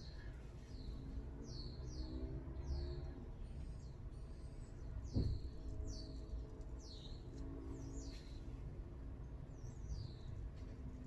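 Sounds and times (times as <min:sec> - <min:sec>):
soft knock: 0:05.1 - 0:05.4.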